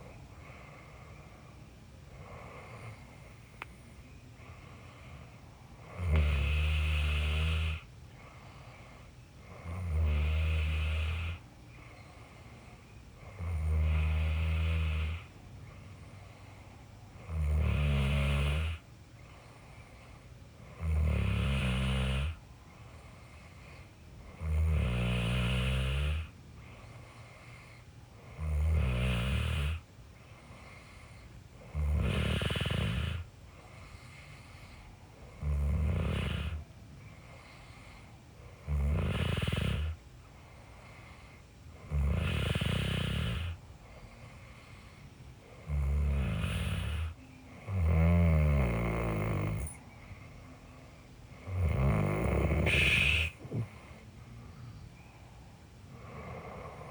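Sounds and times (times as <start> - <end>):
faint steady background sound: 0.0 - 56.9
person snoring: 5.8 - 7.9, 9.6 - 11.4, 13.3 - 15.3, 20.8 - 22.4, 24.4 - 26.3, 28.3 - 29.8, 31.6 - 33.2, 35.4 - 36.6, 38.6 - 40.0, 41.8 - 43.6, 45.6 - 49.8, 51.4 - 54.0.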